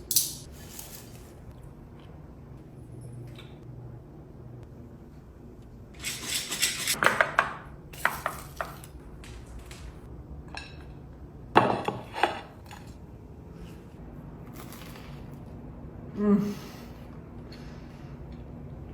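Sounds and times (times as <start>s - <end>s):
dishes and utensils clattering: 6.0s - 7.4s, 11.6s - 12.9s.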